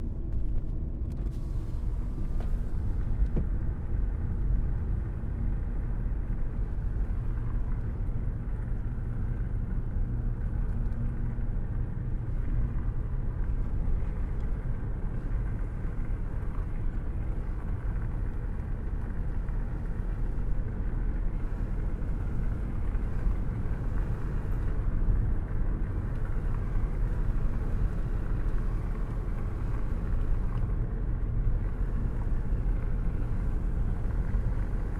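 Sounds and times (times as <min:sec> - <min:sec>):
road rumble: 0:00.0 - 0:34.9.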